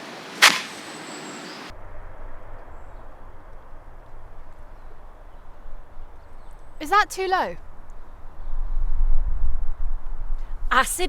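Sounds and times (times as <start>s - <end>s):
bright hiss: 0.0s - 1.7s.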